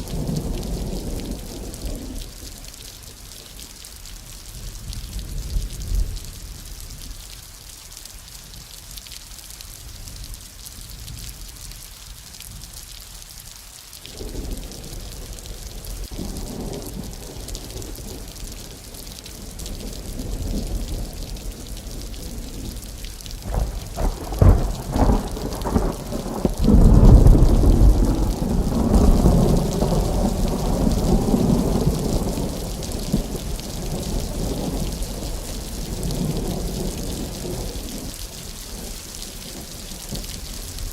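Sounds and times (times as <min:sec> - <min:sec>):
steady rain hiss: 0:00.0 - 0:40.9
thunder rumbling: 0:14.1 - 0:40.9
sharp thunder cracks: 0:23.4 - 0:34.4.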